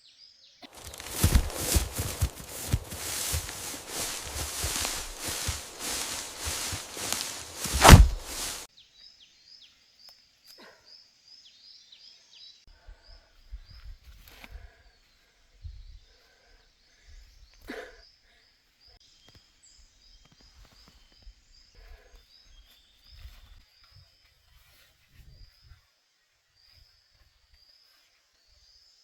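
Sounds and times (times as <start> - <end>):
soft rustles: 0.7 - 8.7
low rumble of wind: 0.8 - 8.7.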